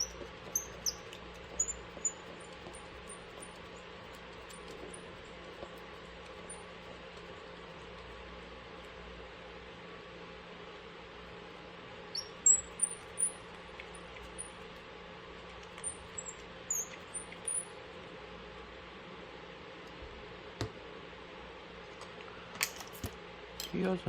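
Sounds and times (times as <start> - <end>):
small bird chirping: 0.0 - 7.0, 12.1 - 14.8, 15.7 - 17.7
steady low hum: 0.0 - 24.0.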